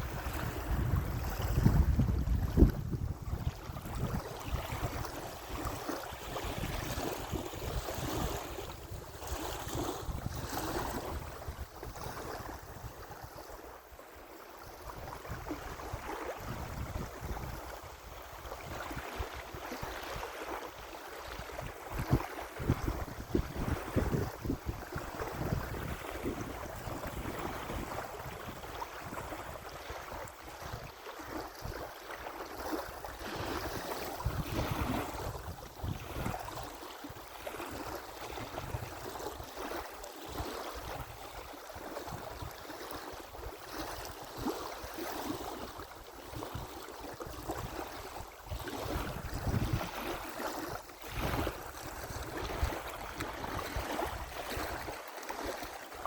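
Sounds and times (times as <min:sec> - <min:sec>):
wind buffeting microphone: 0:00.0 - 0:13.6, 0:14.9 - 0:20.3, 0:21.3 - 0:31.8, 0:32.7 - 0:36.8, 0:46.3 - 0:55.0.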